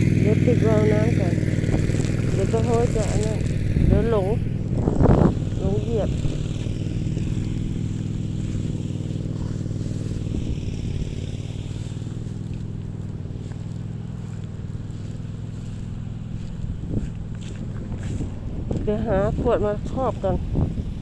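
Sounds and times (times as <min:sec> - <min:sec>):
small engine droning: 0:00.0 - 0:21.0.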